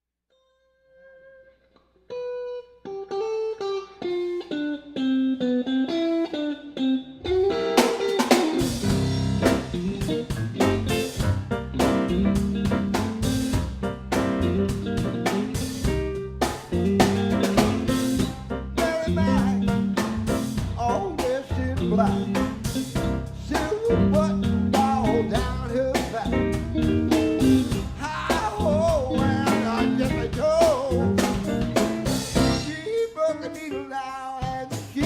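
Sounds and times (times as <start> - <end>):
electric guitar riff: 0.7 - 33.8
blues band playing: 2.1 - 35.0.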